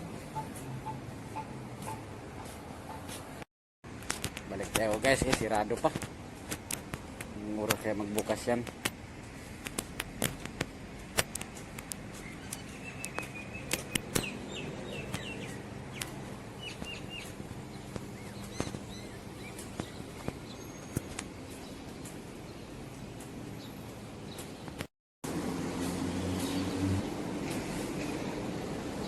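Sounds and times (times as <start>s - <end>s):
small birds chirping: 0.1s - 3.2s, 11.3s - 24.8s
sharp clicks: 9.6s - 14.3s.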